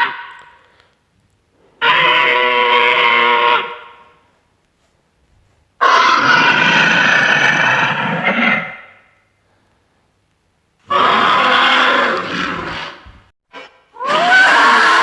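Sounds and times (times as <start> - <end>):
harsh alien creature call: 1.8 - 4.2, 5.8 - 9.2, 10.9 - 15.0.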